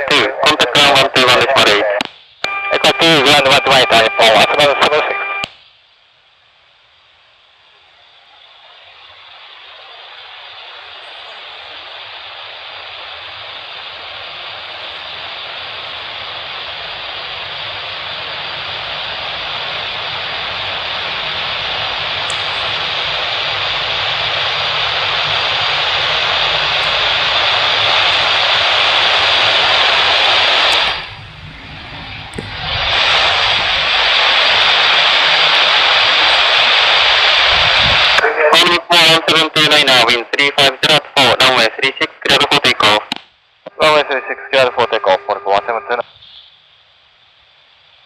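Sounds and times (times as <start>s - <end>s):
jet airliner engines rushing: 8.1s - 39.8s.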